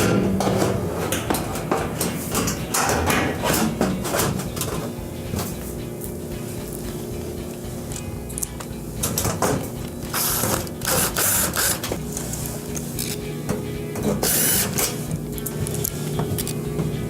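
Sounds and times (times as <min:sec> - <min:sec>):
background music: 0:00.0 - 0:17.0
mechanical clicking and whirring: 0:06.8 - 0:17.0.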